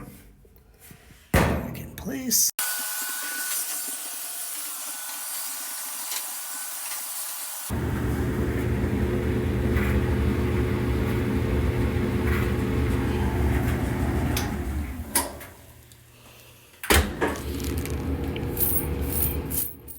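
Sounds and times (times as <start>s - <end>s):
dryer motor humming: 7.6s - 19.7s
dryer click: 7.9s - 16.0s, 16.8s - 19.0s.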